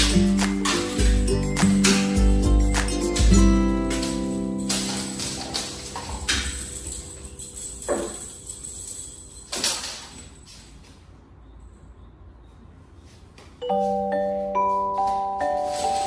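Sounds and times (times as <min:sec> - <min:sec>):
bright chiming mallet tune: 0:00.0 - 0:09.0, 0:13.6 - 0:16.0.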